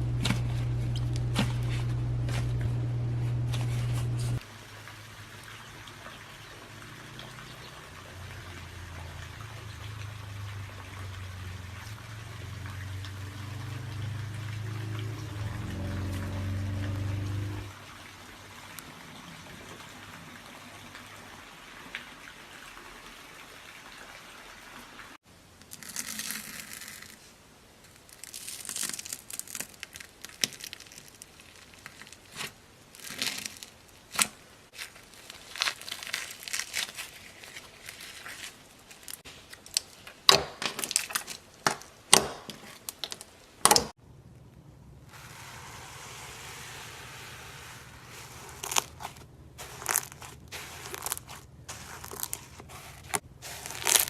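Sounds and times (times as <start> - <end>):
slime crackling and popping: 28.0 - 40.1, 48.4 - 54.0
faint hiss: 45.1 - 48.6.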